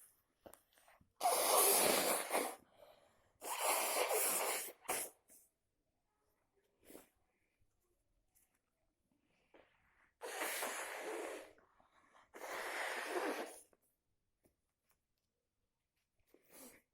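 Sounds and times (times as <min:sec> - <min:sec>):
person blowing nose into tissue: 0:01.2 - 0:02.7, 0:03.4 - 0:05.4, 0:10.2 - 0:11.6, 0:12.2 - 0:13.7.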